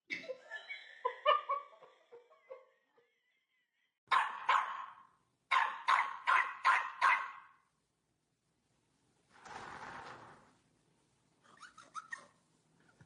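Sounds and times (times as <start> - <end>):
dog barking: 4.1 - 7.6.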